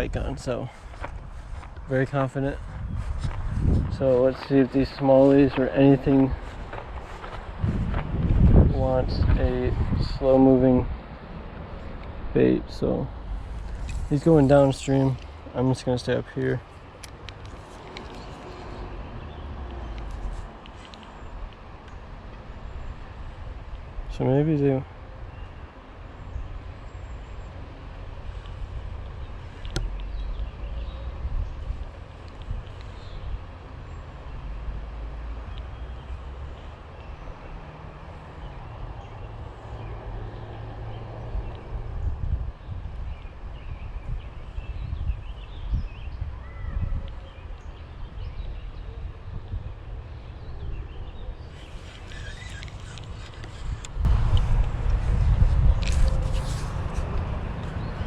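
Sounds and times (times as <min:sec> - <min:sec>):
small birds chirping: 0:00.0 - 0:10.2, 0:13.4 - 0:34.4, 0:35.1 - 0:58.0
low outdoor rumble: 0:52.0 - 0:58.0.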